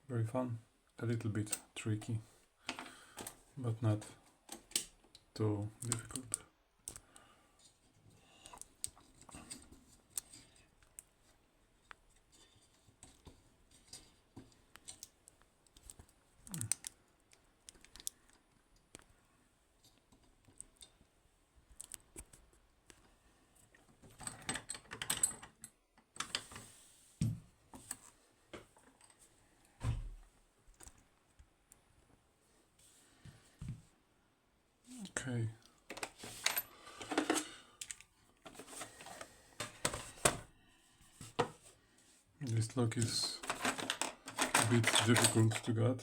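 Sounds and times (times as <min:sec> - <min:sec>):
lock-picking tools clicking and rattling: 0:04.5 - 0:07.0, 0:13.8 - 0:19.0, 0:24.1 - 0:26.4, 0:42.5 - 0:46.0.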